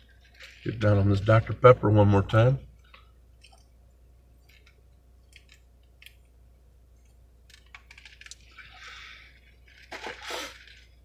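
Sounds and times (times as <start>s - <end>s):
hissing sip: 10.0s - 10.7s.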